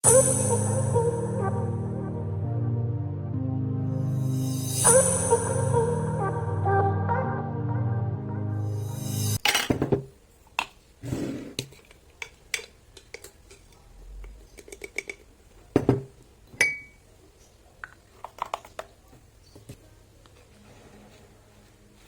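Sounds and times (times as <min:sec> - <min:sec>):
glassware and utensils clattering: 0:09.4 - 0:10.1, 0:14.6 - 0:17.0
glass clink ringing: 0:16.6 - 0:17.0.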